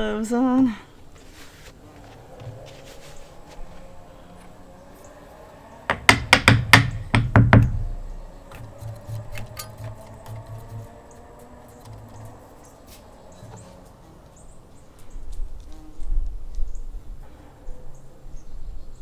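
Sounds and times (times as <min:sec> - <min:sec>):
tools knocking and clattering: 0:05.9 - 0:12.5.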